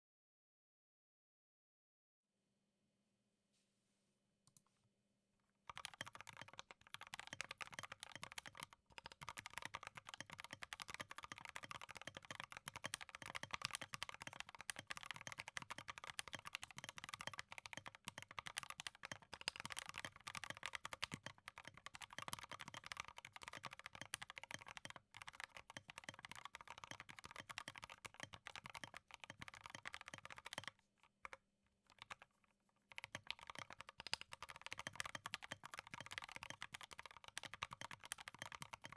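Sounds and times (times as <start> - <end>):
fast typing on mechanical keyboard: 5.7 - 32.2, 32.9 - 38.9.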